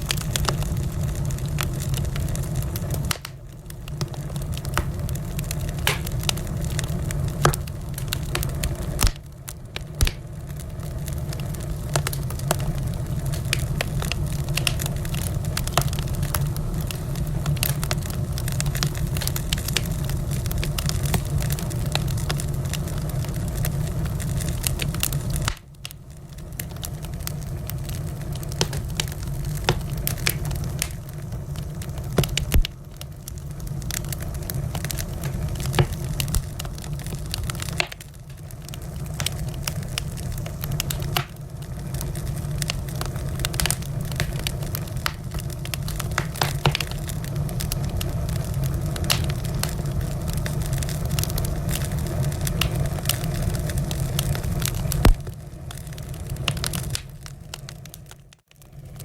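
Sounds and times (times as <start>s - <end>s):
low rumble of burning: 0.0s - 59.0s
wood fire crackling and popping: 0.0s - 59.0s.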